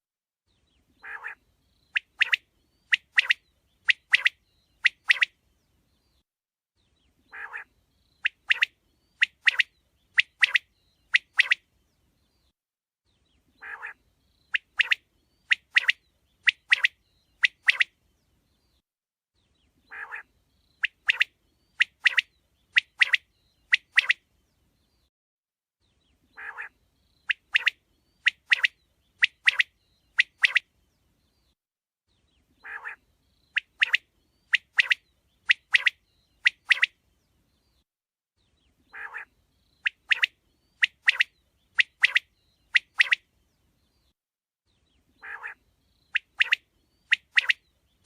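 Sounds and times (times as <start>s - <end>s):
quail calling: 1.0s - 1.4s, 7.3s - 7.7s, 13.6s - 14.0s, 19.9s - 21.2s, 26.4s - 26.7s, 32.6s - 33.0s, 38.9s - 43.2s, 45.2s - 45.6s.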